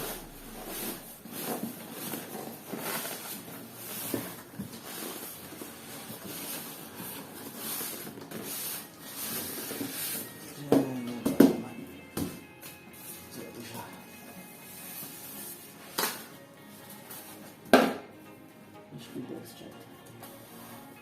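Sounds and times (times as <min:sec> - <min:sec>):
packaging rubbing and rustling: 0:00.0 - 0:11.2.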